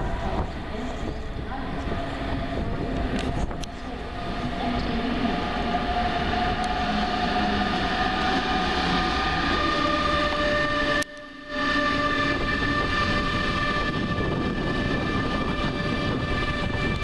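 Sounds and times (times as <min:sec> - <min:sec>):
rail clicks: 0:00.0 - 0:10.2
high steady whine: 0:00.0 - 0:17.0
train rumble on rails: 0:00.0 - 0:17.0.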